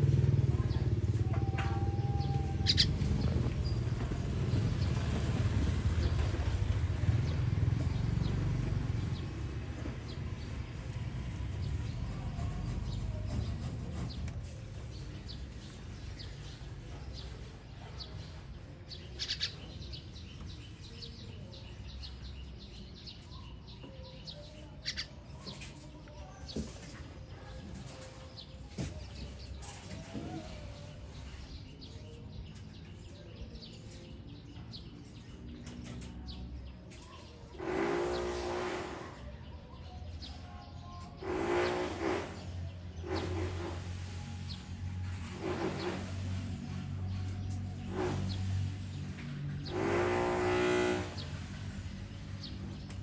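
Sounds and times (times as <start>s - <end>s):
passing vehicle rumble: 0.0s - 25.6s, 28.2s - 53.0s
baby birds chirping: 0.8s - 5.1s, 18.0s - 44.7s.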